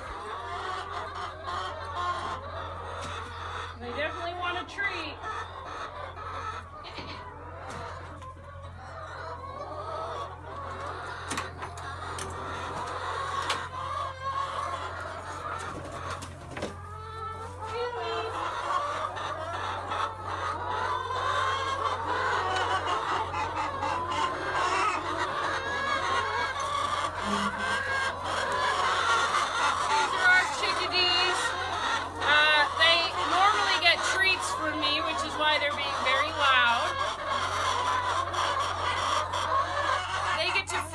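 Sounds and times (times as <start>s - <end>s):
chickens clucking: 0.0s - 40.9s.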